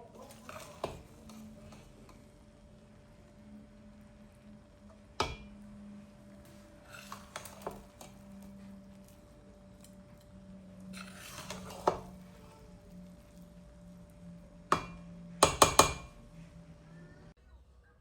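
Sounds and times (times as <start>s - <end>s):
faint steady hum: 0.0s - 18.0s
kitchenware clinking: 5.2s - 5.6s, 6.9s - 8.5s, 9.7s - 12.4s.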